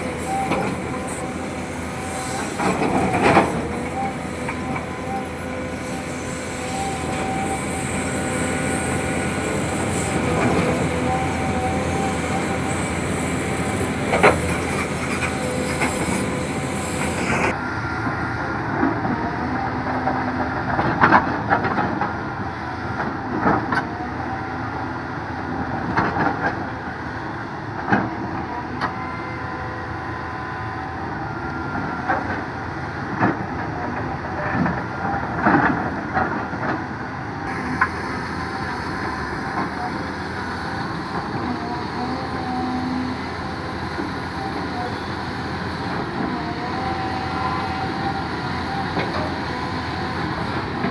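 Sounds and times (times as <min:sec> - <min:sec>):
faint hydraulic whine: 0:00.0 - 0:19.2, 0:26.5 - 0:50.9
diesel engine running: 0:00.0 - 0:20.7, 0:31.6 - 0:50.9.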